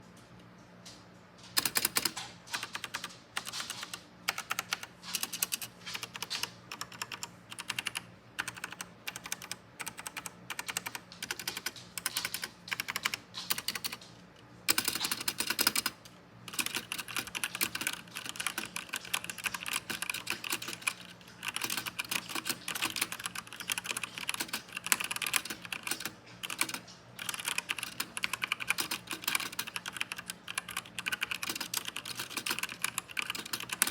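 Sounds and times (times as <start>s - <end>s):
mechanical keyboard typing: 1.6s - 14.1s, 14.7s - 33.9s.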